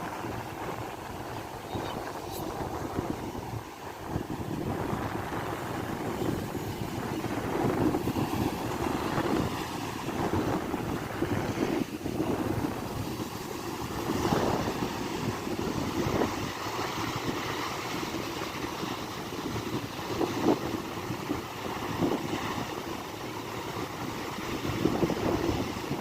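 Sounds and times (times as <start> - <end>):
sea surf breaking: 0.0 - 26.0
wind buffeting microphone: 0.0 - 26.0.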